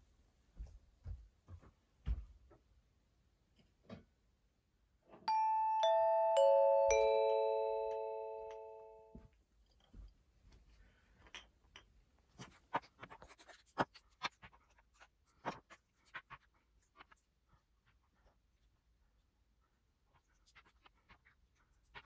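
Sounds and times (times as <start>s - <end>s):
descending chime jingle: 5.3s - 9.1s.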